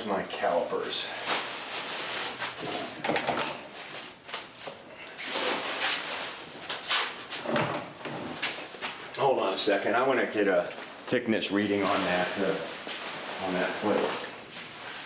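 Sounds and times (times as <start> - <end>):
rummaging rustles clicks and knocks: 1.2 - 9.0.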